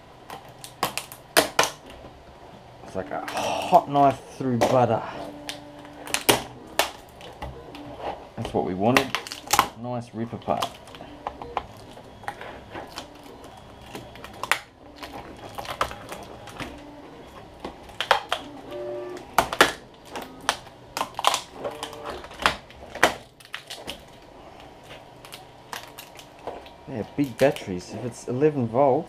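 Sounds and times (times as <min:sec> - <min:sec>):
plastic casing snapping: 0:00.3 - 0:02.0, 0:05.5 - 0:07.8, 0:08.4 - 0:09.8, 0:10.4 - 0:16.8, 0:17.6 - 0:18.5, 0:19.2 - 0:27.7.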